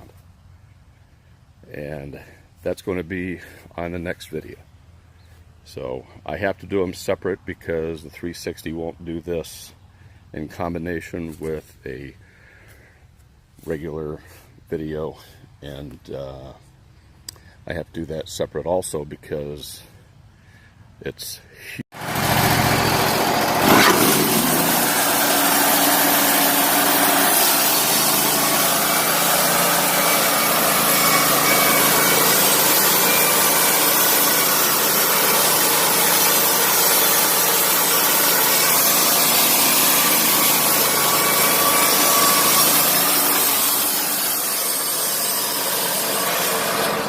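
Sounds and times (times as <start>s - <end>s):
bandsaw blade cutting log: 22.0s - 47.0s.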